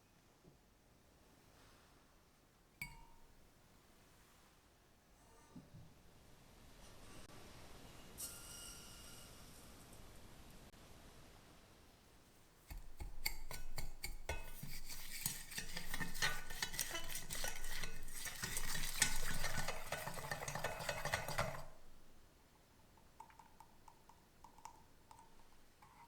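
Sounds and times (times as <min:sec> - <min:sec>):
utensil stirring in a bowl: 0:12.6 - 0:22.2, 0:23.1 - 0:26.0
utensil taps: 0:12.7 - 0:21.8, 0:23.0 - 0:26.0.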